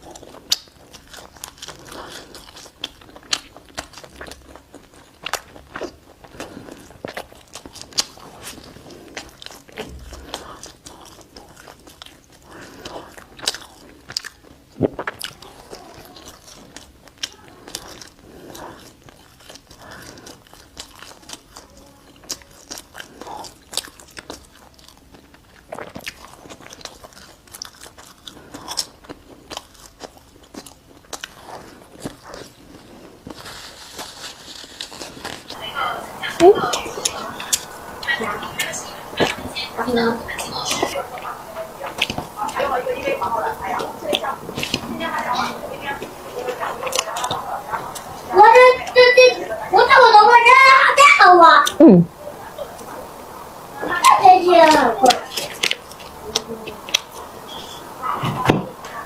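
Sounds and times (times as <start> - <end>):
person chewing and crunching: 0.0 - 35.6, 36.8 - 38.1, 40.4 - 49.0, 54.6 - 58.0
mouth clicks: 51.6 - 53.5.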